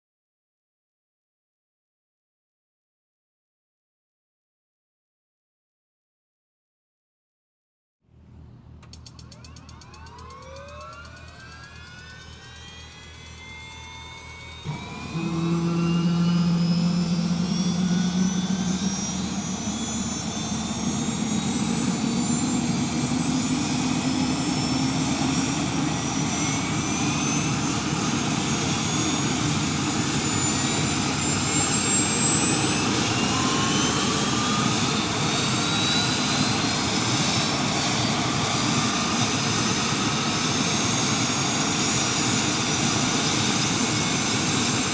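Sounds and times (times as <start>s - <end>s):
helicopter turbine whine: 8.5s - 44.9s.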